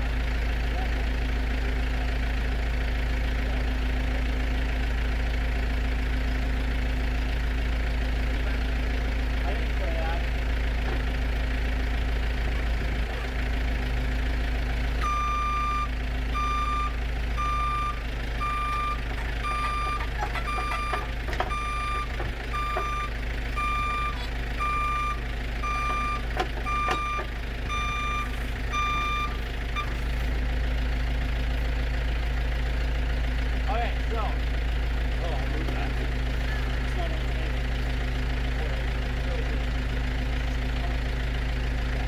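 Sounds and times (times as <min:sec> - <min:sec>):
vehicle reversing beeper: 0:15.0 - 0:30.1.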